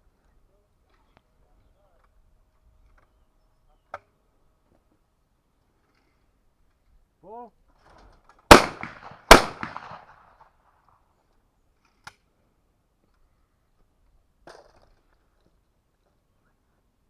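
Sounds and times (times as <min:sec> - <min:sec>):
shotgun shots with echo: 0:08.5 - 0:10.2.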